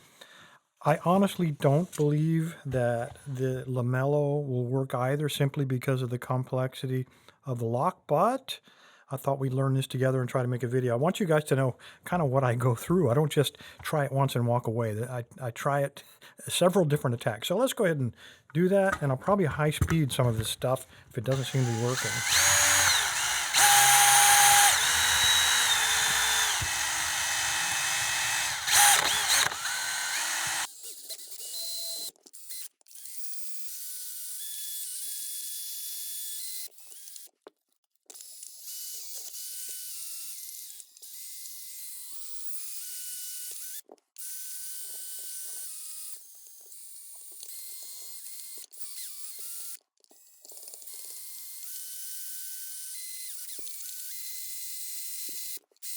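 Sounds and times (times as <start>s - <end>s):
tool motor whirring: 21.3s - 30.7s.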